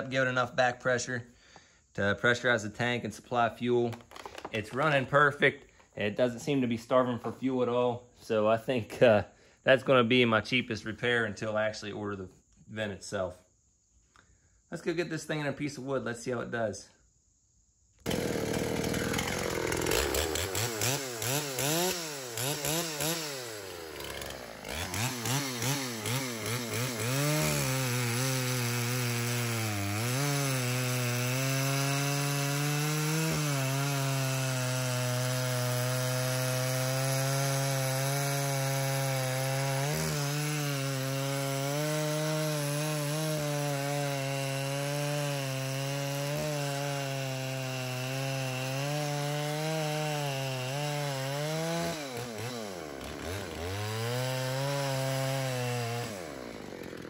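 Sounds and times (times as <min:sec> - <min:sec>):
chainsaw cutting log: 0:03.7 - 0:07.5, 0:18.0 - 0:57.0.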